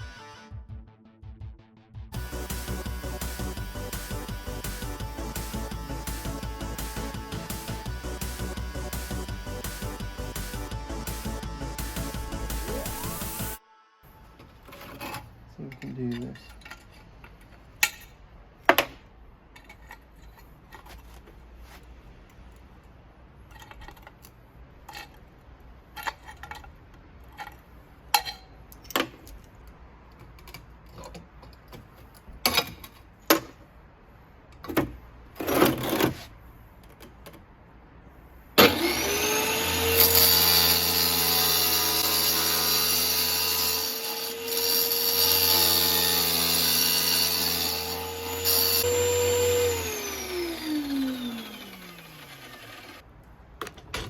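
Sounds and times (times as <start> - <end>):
power tool motor hissing: 38.6 - 53.0.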